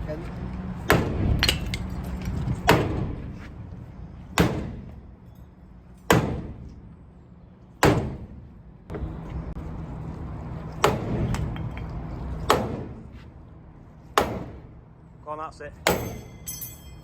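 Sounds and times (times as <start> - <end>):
sledgehammer striking metal casing: 4.4 - 5.0, 6.1 - 6.6, 14.2 - 14.7, 15.8 - 17.0.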